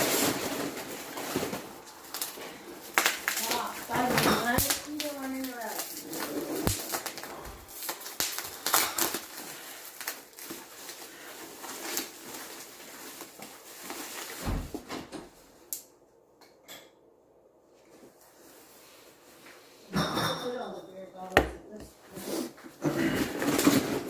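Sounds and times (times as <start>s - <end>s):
packaging rustling with clicks: 0.0s - 14.4s.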